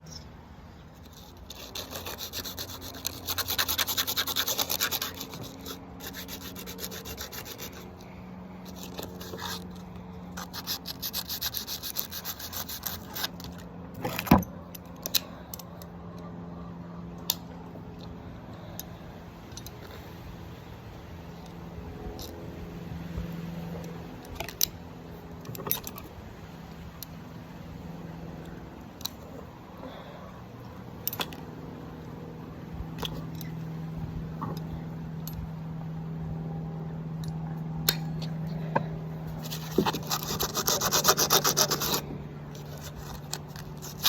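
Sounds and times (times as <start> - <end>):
faint steady hum: 0.0 - 44.0
metal rasping strokes: 1.0 - 14.3, 39.3 - 44.0.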